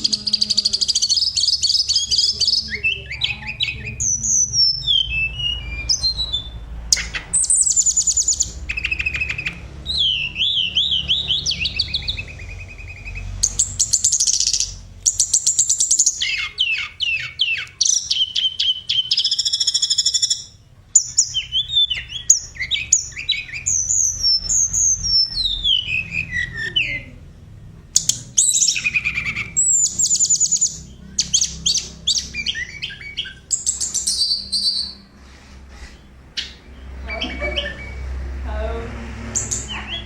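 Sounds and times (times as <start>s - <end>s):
bird singing whistled phrases: 0.0s - 27.1s, 28.0s - 35.0s.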